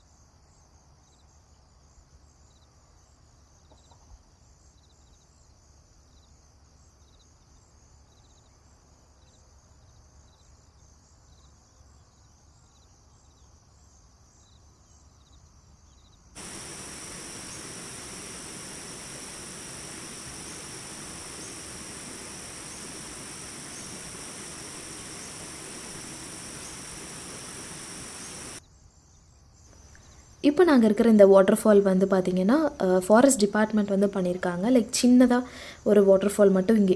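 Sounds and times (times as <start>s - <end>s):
insects chirping: 0.0s - 36.9s
water rushing: 16.4s - 28.6s.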